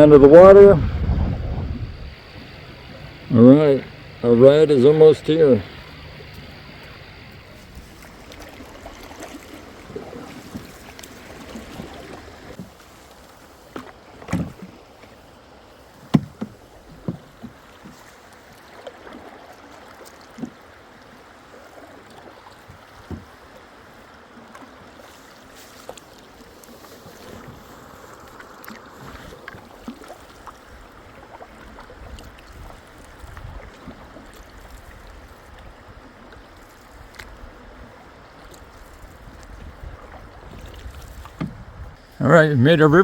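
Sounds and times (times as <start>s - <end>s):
river water rushing: 0.0s - 33.1s
paddles knocking on hull: 5.2s - 12.8s, 16.0s - 18.1s, 22.6s - 23.5s, 39.2s - 41.9s.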